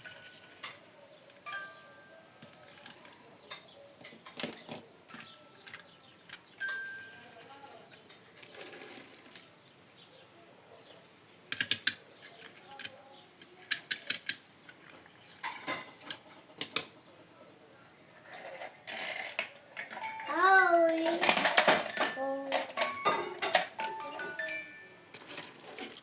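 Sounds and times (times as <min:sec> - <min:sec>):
toy vehicles clicking and clacking: 0:00.0 - 0:09.6, 0:11.5 - 0:17.0, 0:18.1 - 0:26.0
rustling: 0:04.5 - 0:10.1.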